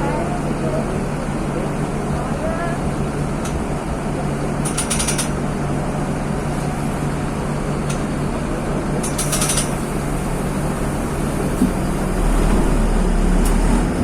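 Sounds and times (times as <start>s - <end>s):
diesel bus engine running: 0.0s - 14.0s
high rattling clicks: 4.6s - 5.4s, 9.0s - 9.8s.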